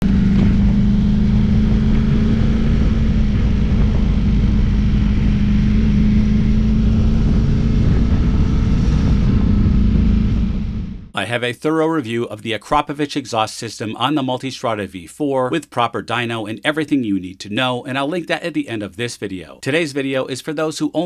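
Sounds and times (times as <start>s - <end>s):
motorcycle engine droning: 0.0s - 11.2s.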